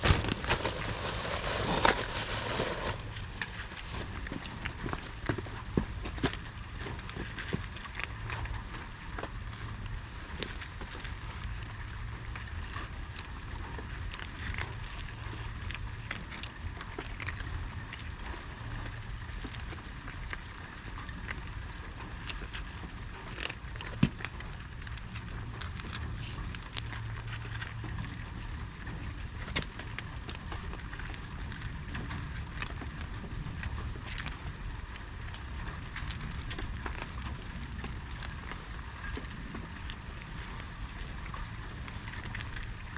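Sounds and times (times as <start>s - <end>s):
steady low rumble: 0.0s - 14.4s, 30.0s - 42.9s
small clicks and ticks: 0.0s - 42.9s.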